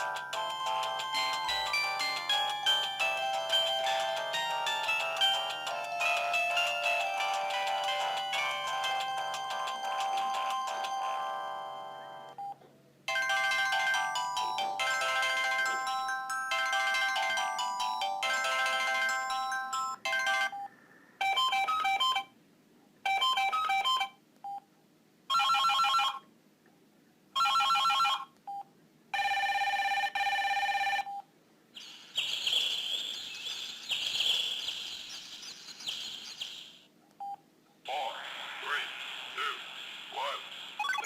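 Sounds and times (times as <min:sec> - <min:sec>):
electronic ringtone melody: 0:00.0 - 0:12.4, 0:13.1 - 0:22.3, 0:23.1 - 0:24.1.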